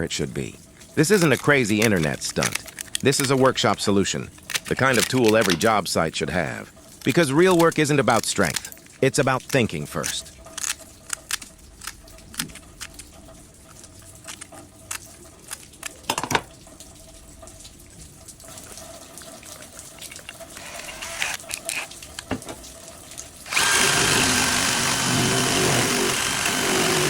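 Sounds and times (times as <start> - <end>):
metal parts clicking and knocking: 1.1 - 3.4, 4.4 - 5.7
power drill drilling: 20.6 - 21.8, 23.5 - 27.0.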